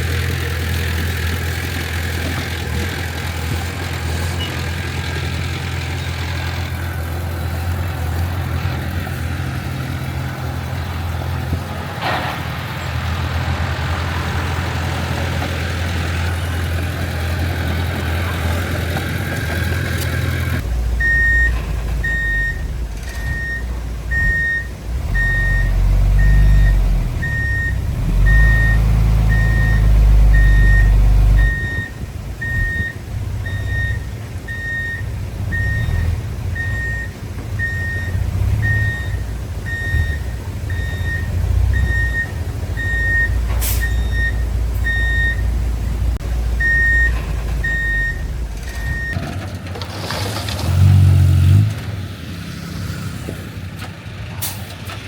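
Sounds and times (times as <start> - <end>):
heavy diesel machinery running: 0.0 - 55.0
reversing alarm beeping: 20.5 - 45.5, 46.6 - 49.2.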